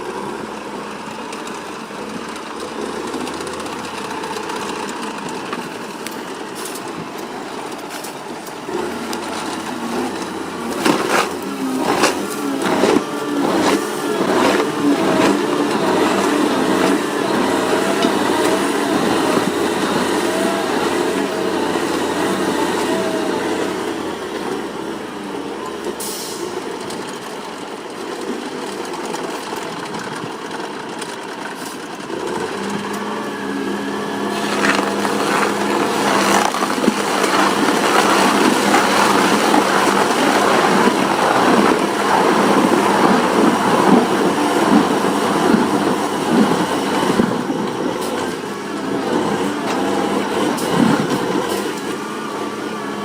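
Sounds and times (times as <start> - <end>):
heavy machinery engine running: 0.0 - 53.0.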